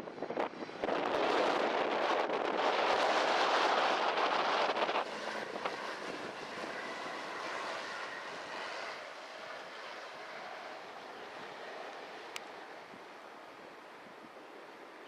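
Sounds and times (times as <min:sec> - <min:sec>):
wind noise on microphone: 0:00.0 - 0:08.6
turboprop engines whining: 0:00.0 - 0:15.0.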